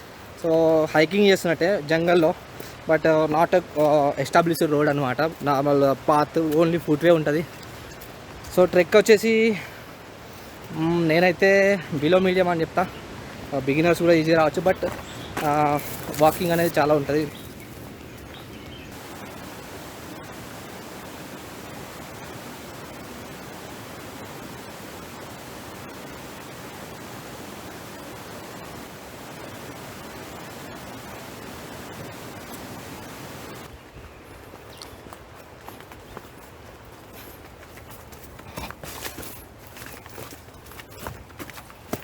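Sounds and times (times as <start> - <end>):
stream rushing: 0.0 - 33.8
footsteps crunching on path: 1.9 - 11.0, 11.8 - 19.3, 33.7 - 42.0.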